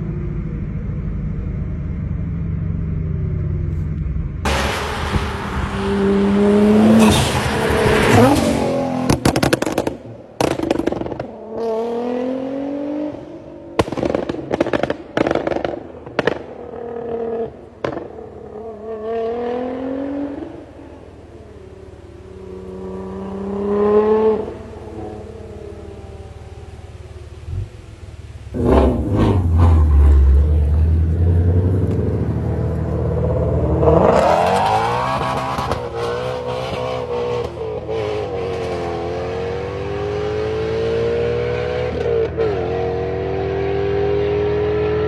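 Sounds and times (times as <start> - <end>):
car engine revving: 2.0 - 45.0
exhaust pops and crackles: 9.0 - 11.4, 13.8 - 16.6, 17.8 - 18.1.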